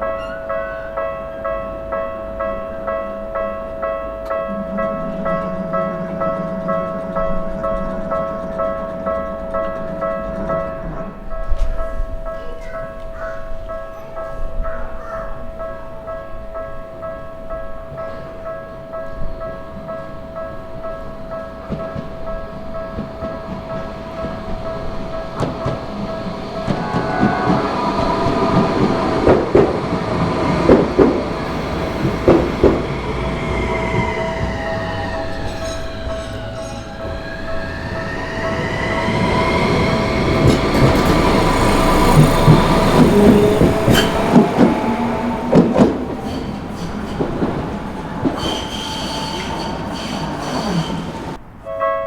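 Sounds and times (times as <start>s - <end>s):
crossing warning bell ringing: 0.0s - 52.0s
train wheels clacking over rail joints: 21.3s - 51.4s
falling whine: 22.6s - 46.7s.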